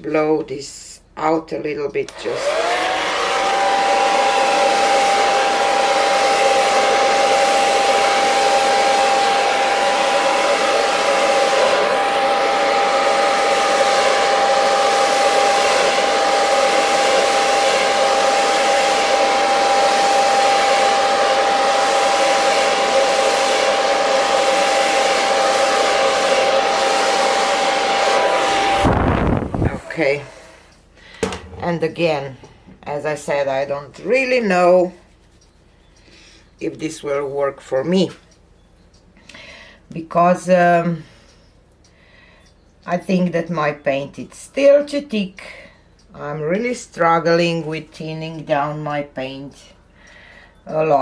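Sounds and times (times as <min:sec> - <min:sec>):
hair dryer running: 0:02.0 - 0:35.2.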